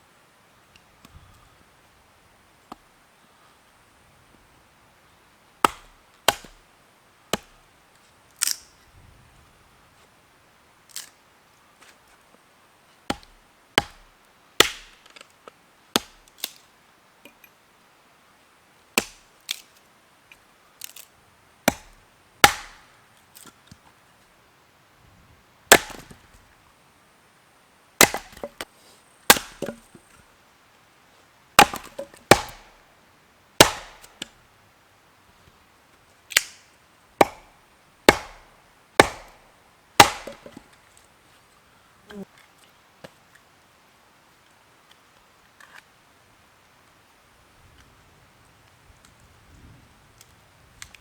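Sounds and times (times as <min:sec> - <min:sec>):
blade chopping wood: 0:05.6 - 0:06.6, 0:07.3 - 0:07.6, 0:13.1 - 0:15.2, 0:16.0 - 0:16.6, 0:19.0 - 0:19.6, 0:21.7 - 0:22.9, 0:25.7 - 0:26.2, 0:28.0 - 0:28.7, 0:29.3 - 0:29.9, 0:31.6 - 0:32.8, 0:33.6 - 0:34.3, 0:37.2 - 0:37.5, 0:38.1 - 0:39.4, 0:40.0 - 0:40.7.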